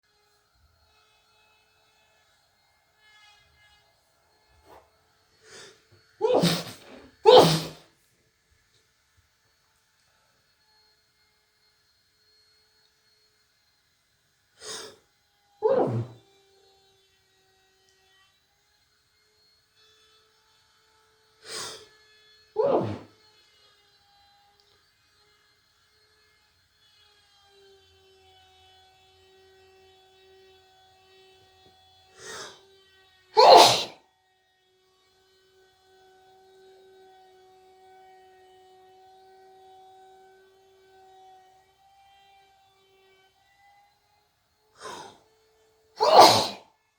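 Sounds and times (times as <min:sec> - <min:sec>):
person sneezing: 0:05.5 - 0:07.8, 0:14.6 - 0:14.9, 0:15.6 - 0:16.2, 0:21.5 - 0:21.8, 0:22.6 - 0:23.1, 0:32.2 - 0:32.6, 0:33.4 - 0:34.0, 0:44.8 - 0:45.2, 0:46.0 - 0:46.6
short breathy sound: 0:05.5 - 0:07.8, 0:15.6 - 0:16.2, 0:22.6 - 0:23.1, 0:32.2 - 0:32.6, 0:33.4 - 0:33.9, 0:44.8 - 0:45.2, 0:46.0 - 0:46.6.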